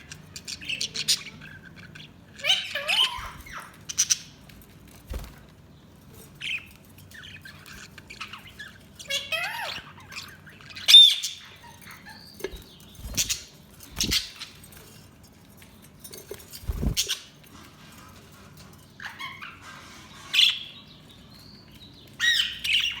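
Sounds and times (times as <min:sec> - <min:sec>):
budgies chirping: 0:00.0 - 0:14.9, 0:16.2 - 0:17.4, 0:18.2 - 0:23.0.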